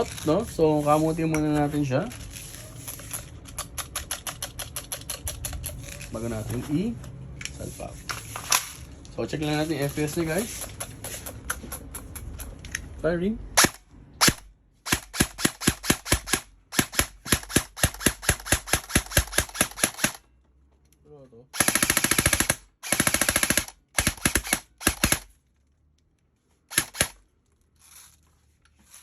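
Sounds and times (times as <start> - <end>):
airsoft rifle firing: 13.6 - 20.2, 21.6 - 25.3, 26.7 - 27.2.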